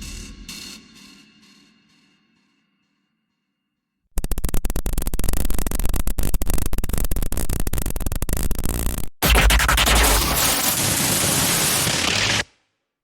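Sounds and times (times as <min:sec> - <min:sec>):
heavy low rumble: 0:00.0 - 0:00.6
harsh crackling noise: 0:04.1 - 0:12.5.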